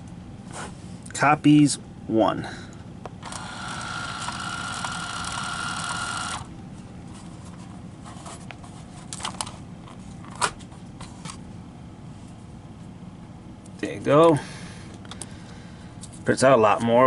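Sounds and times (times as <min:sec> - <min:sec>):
label maker motor whirring: 0:03.2 - 0:06.5.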